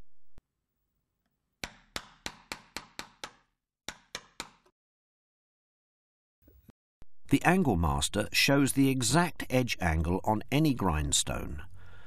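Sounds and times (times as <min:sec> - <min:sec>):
mallet striking wood chisel: 0:01.6 - 0:04.7.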